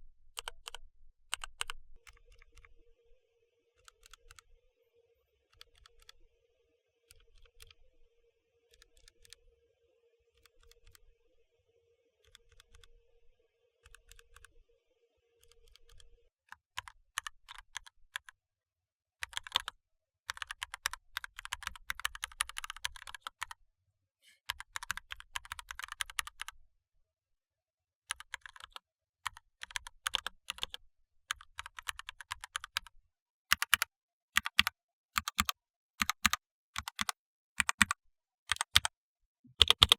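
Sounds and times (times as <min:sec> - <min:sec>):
mechanical keyboard typing: 0:00.4 - 0:02.7, 0:03.8 - 0:04.4, 0:16.8 - 0:18.3, 0:19.2 - 0:19.7, 0:20.3 - 0:23.5, 0:24.5 - 0:26.5, 0:28.1 - 0:32.9, 0:33.5 - 0:39.9.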